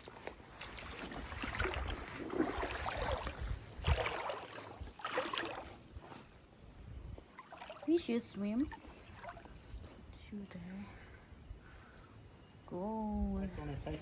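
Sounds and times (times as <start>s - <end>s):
water splashing in a creek: 0.0s - 9.7s.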